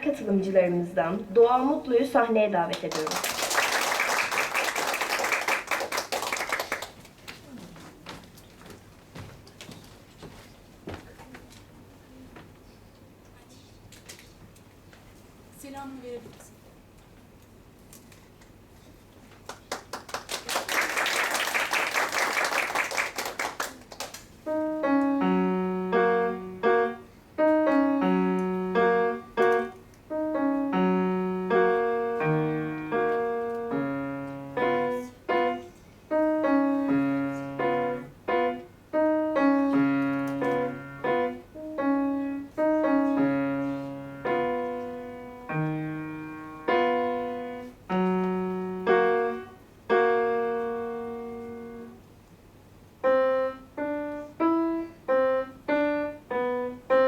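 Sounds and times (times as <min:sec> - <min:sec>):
audience applause: 0:02.9 - 0:07.5, 0:19.4 - 0:24.3
solo acoustic piano piece: 0:24.4 - 0:52.0, 0:53.0 - 0:57.0.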